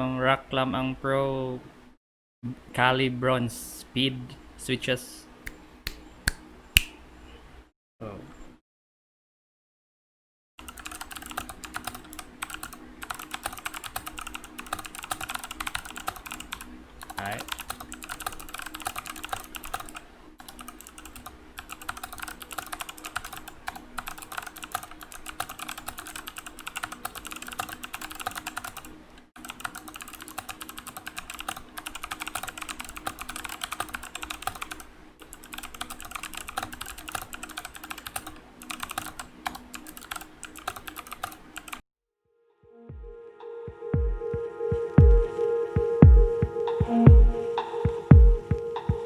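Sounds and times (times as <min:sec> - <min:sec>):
fast typing on mechanical keyboard: 0:10.6 - 0:41.8.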